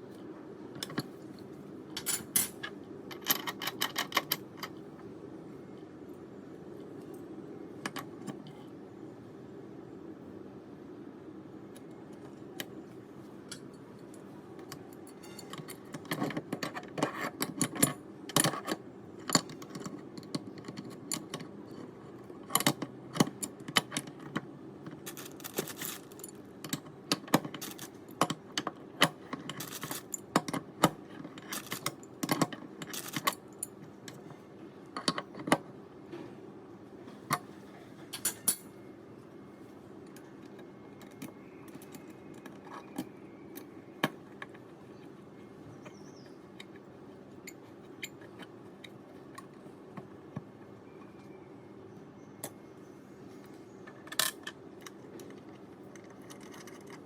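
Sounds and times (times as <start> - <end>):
low background hum: 0.0 - 57.0
metallic clinks of tools: 15.1 - 15.7.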